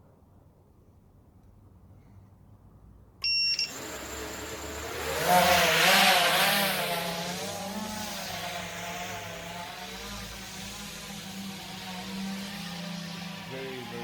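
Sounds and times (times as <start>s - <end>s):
short electronic beep: 3.2s - 3.8s
quadcopter motors whirring: 3.6s - 14.0s.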